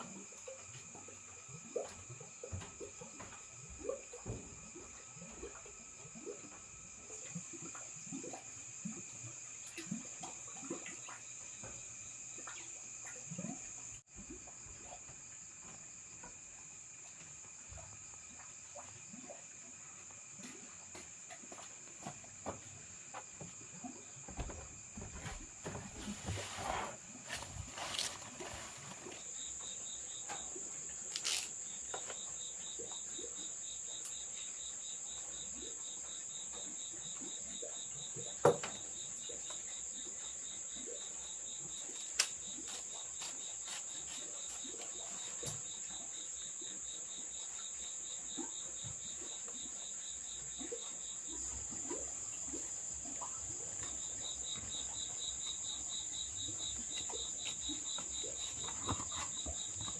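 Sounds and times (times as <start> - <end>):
pulsing insect chirp: 0.0 - 59.9
high-pitched insect trill: 27.3 - 59.9.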